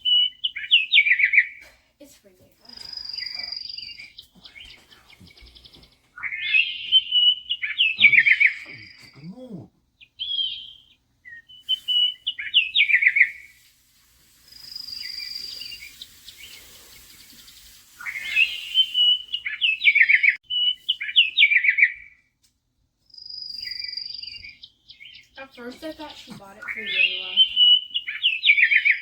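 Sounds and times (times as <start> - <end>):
bird chirps and trills: 0.0 - 1.6, 2.6 - 13.6, 14.5 - 22.1, 23.1 - 29.0
high whistled bird note: 11.4 - 13.7, 14.5 - 21.3.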